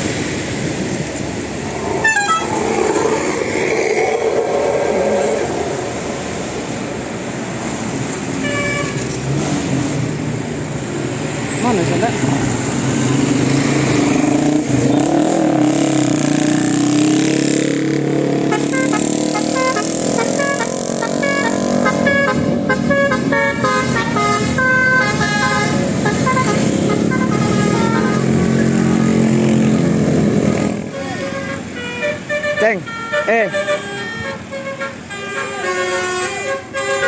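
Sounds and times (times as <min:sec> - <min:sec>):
bus horn playing melody: 0:02.0 - 0:02.6, 0:08.4 - 0:09.1, 0:18.4 - 0:29.5, 0:30.8 - 0:37.0.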